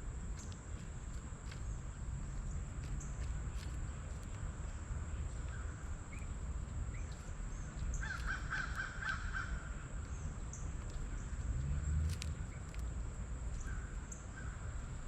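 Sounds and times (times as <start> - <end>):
birds chirping: 4.6 - 11.5
harsh repeated bird calls: 7.9 - 11.3.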